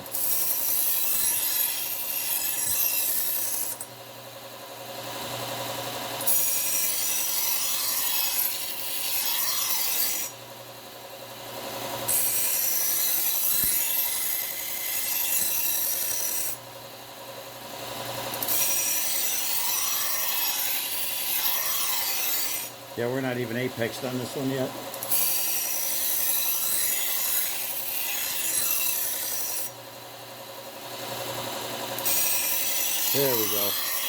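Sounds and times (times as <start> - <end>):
knife grinding on sander belt: 0.0 - 3.9, 5.6 - 10.4, 11.7 - 16.6, 17.9 - 29.8, 30.9 - 34.0
belt sander motor hum: 30.8 - 34.0.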